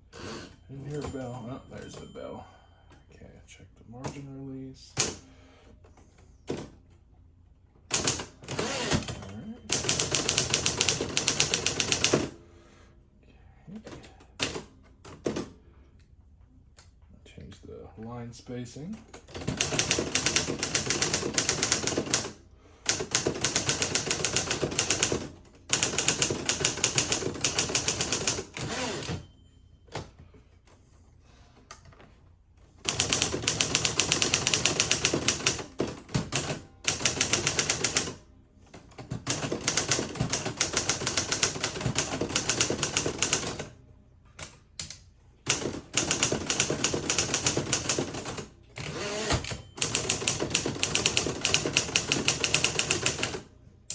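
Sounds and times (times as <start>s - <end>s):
manual typewriter keystrokes: 7.9s - 12.3s, 19.0s - 29.2s, 32.8s - 43.7s, 44.4s - 53.4s.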